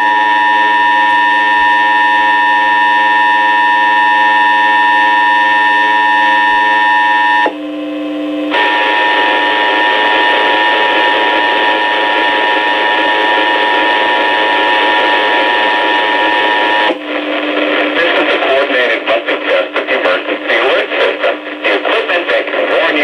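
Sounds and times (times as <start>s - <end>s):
static hiss: 8.3s - 23.0s.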